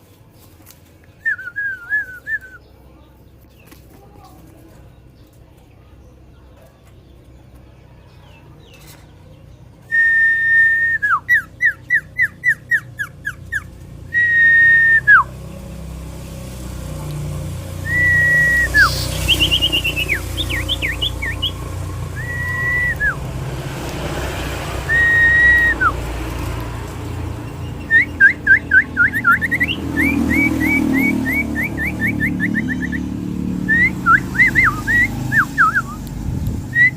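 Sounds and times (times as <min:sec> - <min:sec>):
bird whistling song: 0:01.1 - 0:02.7, 0:09.8 - 0:15.7, 0:17.8 - 0:23.3, 0:24.8 - 0:26.1, 0:27.5 - 0:36.9.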